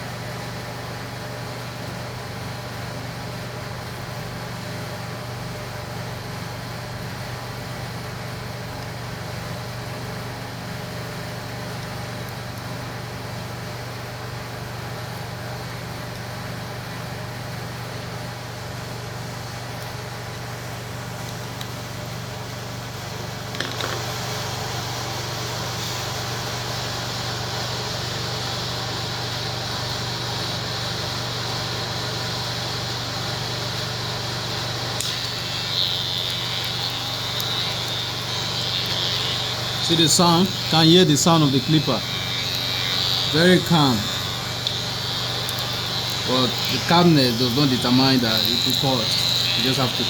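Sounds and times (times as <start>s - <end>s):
high buzzing hiss: 22.8s - 50.0s
electric hair clipper humming: 23.4s - 50.0s.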